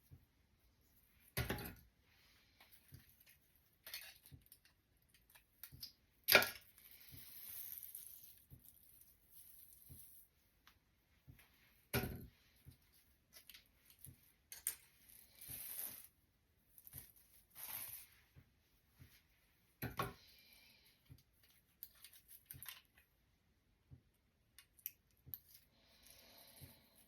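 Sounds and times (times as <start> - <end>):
velcro hair rollers rasping: 6.9 - 10.2, 15.0 - 16.2, 16.8 - 18.2.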